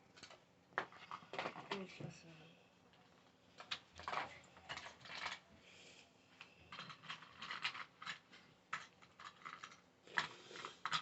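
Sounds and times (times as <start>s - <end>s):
small hard objects clicking: 6.4s - 11.0s.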